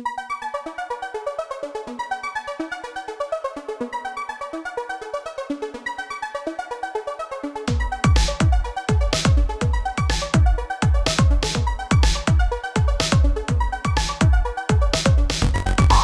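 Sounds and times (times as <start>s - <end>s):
heavy bass and kick drum: 7.7s - 16.0s
synthesizer arpeggio: 15.4s - 16.0s.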